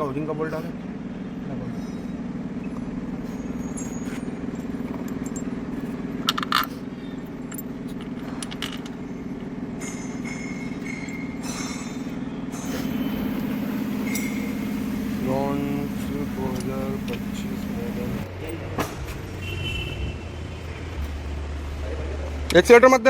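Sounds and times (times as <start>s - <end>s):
low mechanical hum: 0.0s - 22.6s
metal tools clinking: 7.3s - 18.2s.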